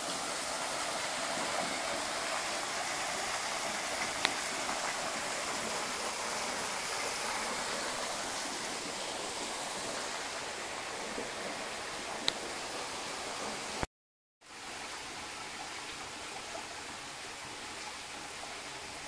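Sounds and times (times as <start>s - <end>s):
river rushing: 0.0s - 13.8s.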